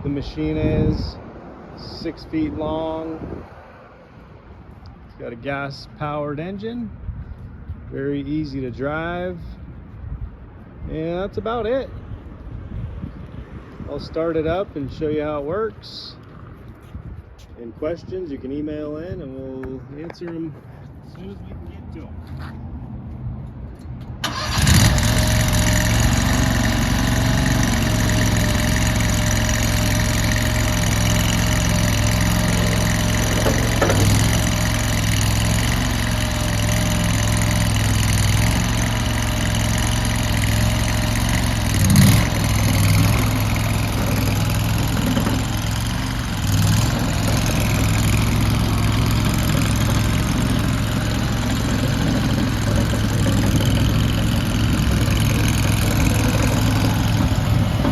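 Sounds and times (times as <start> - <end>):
loader engine running: 23.5 - 57.9.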